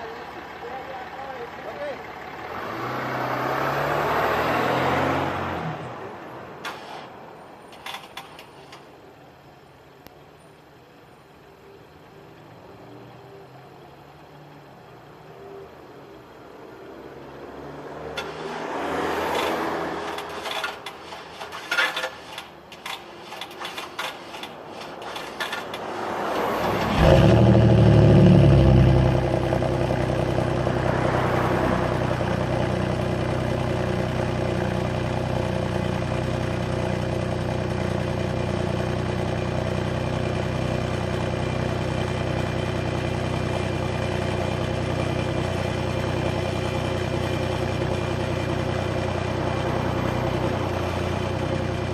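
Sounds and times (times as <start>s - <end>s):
car engine cranking and idling: 5.7s - 9.1s, 18.0s - 51.9s.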